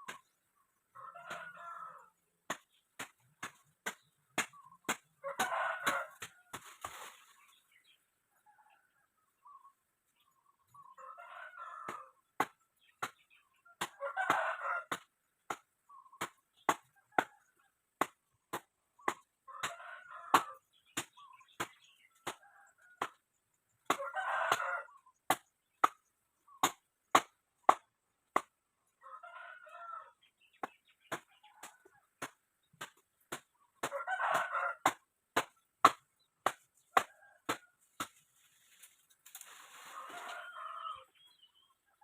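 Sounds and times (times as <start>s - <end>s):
rooster crowing: 5.2s - 6.3s, 11.0s - 12.2s, 13.9s - 14.9s, 23.9s - 25.0s, 33.8s - 35.0s, 39.8s - 41.2s.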